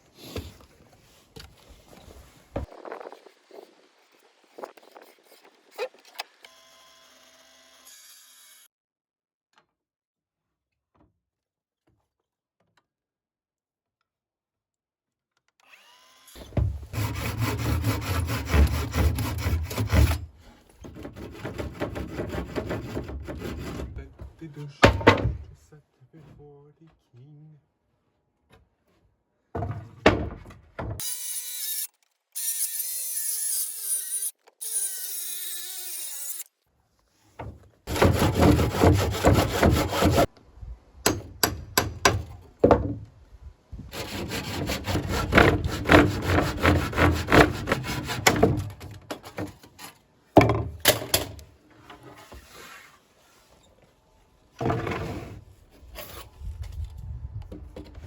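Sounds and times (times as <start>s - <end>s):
saw cutting through wood: 4.4s - 8.7s, 15.6s - 24.1s, 31.0s - 36.5s, 37.9s - 40.3s, 43.9s - 48.8s.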